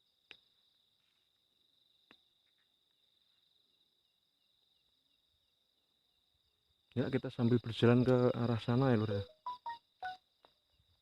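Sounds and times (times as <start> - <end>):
insects trilling: 0.0 - 11.0
soft chirp: 9.2 - 10.9.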